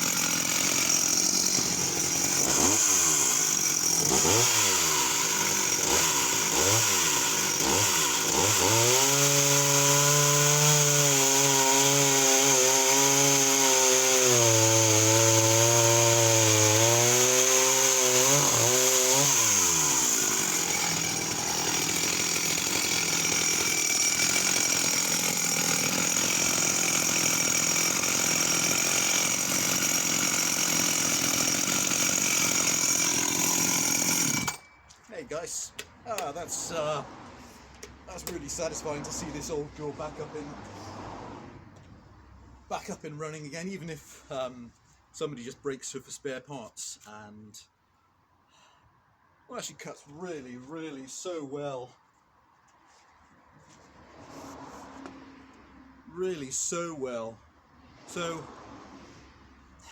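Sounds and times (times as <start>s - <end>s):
chainsaw cutting log: 0.0s - 34.8s, 35.8s - 37.1s, 37.8s - 40.4s, 58.0s - 58.8s.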